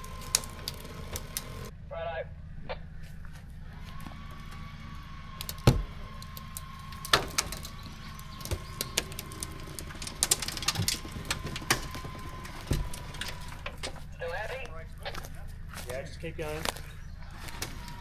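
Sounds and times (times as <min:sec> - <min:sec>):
low engine idle: 0:00.0 - 0:18.0
vehicle winch pulling with whine: 0:00.0 - 0:18.0
sharp knocks and creaks: 0:03.3 - 0:15.3, 0:16.6 - 0:18.0.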